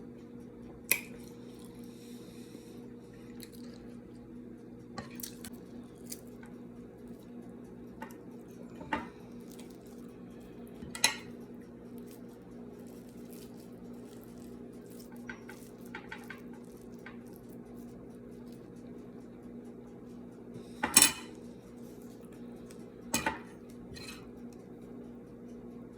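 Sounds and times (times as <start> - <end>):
steady low hum: 0.0 - 25.9
cutlery clinking on a plate: 10.8 - 11.4, 20.8 - 21.4, 23.1 - 24.3.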